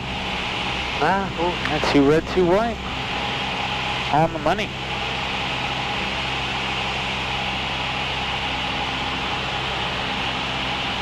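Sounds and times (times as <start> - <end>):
aircraft engine and propeller drone: 0.0 - 11.0.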